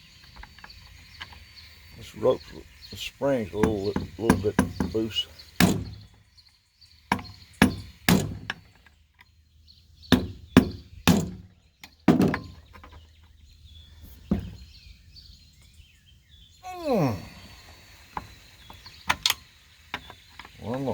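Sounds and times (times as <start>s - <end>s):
sharp knocks on chainsaw parts: 3.6s - 6.1s, 7.1s - 8.8s, 10.1s - 12.9s.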